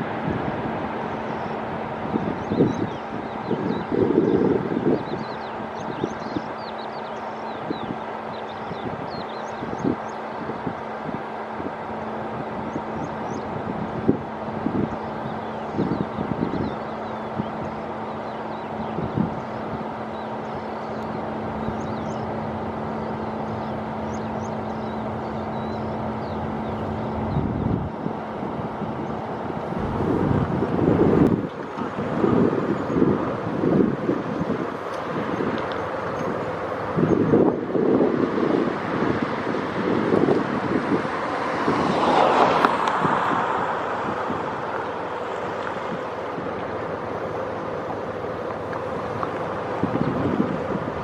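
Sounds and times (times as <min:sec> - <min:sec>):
broad rushing noise: 0:00.0 - 0:51.0
jet engine humming: 0:00.0 - 0:51.0
wind buffeting microphone: 0:00.0 - 0:51.0
small birds chirping: 0:01.1 - 0:10.7, 0:14.8 - 0:27.6.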